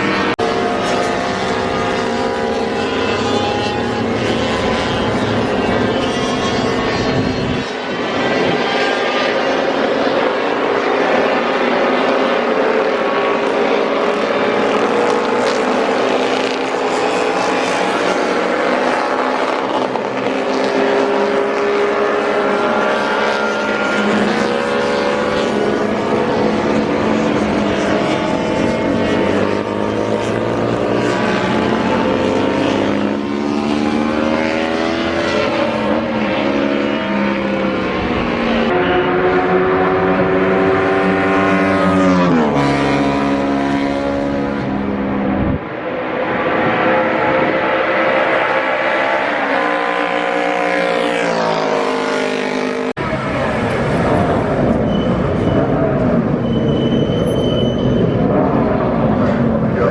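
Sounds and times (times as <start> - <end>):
motorcycle engines revving: 0.0 - 59.9.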